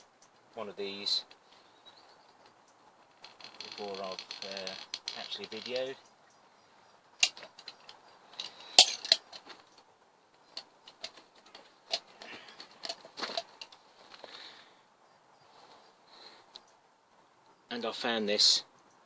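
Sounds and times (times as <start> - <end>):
caulking gun clicks and taps: 7.2 - 13.8.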